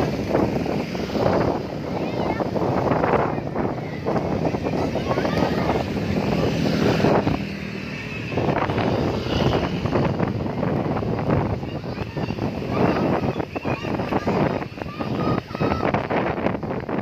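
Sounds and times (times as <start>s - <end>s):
road traffic passing: 0.0s - 17.0s
wind buffeting microphone: 0.0s - 17.0s.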